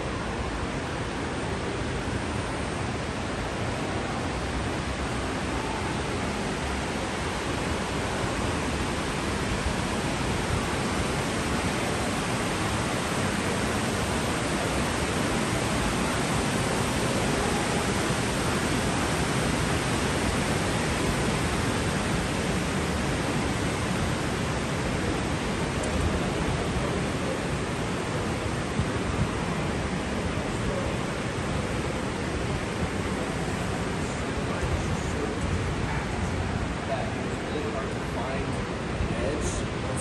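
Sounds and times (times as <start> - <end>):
steady rushing hiss: 0.0 - 40.0.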